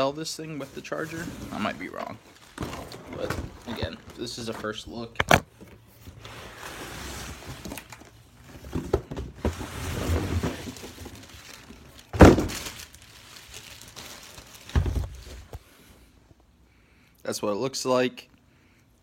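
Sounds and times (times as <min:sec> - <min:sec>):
cardboard and plastic rustling: 0:00.0 - 0:15.8
loud thunk: 0:12.2 - 0:12.6.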